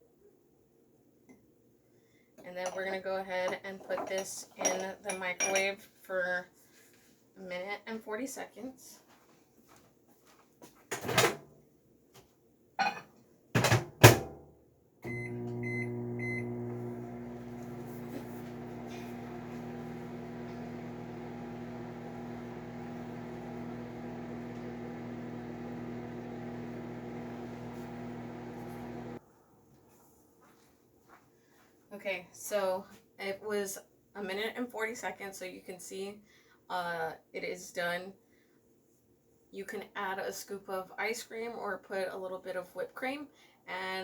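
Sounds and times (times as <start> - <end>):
microwave humming: 15.0 - 29.2
microwave keypad beeps: 15.1 - 16.6.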